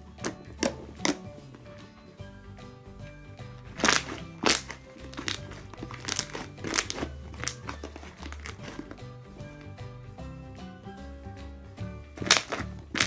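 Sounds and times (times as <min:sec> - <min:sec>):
background music: 0:00.0 - 0:13.0
slime crackling snaps: 0:03.8 - 0:08.6, 0:12.2 - 0:13.0.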